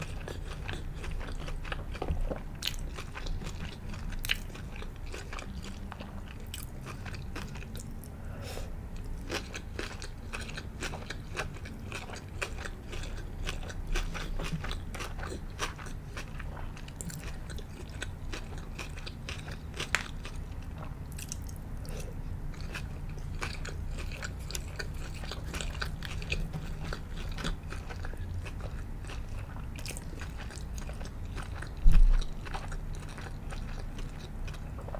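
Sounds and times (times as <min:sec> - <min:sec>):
steady low hum: 0:00.0 - 0:34.9
crunchy biting and chewing: 0:09.0 - 0:34.9.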